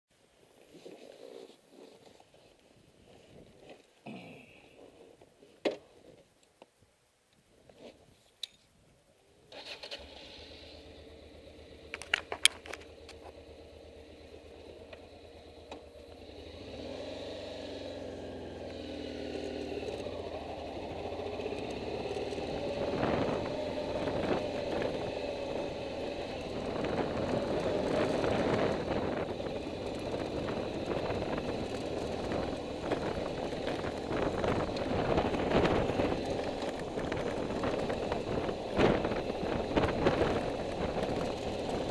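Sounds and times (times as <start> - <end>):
road noise: 9.3 - 41.9
motorcycle engine: 9.5 - 41.9.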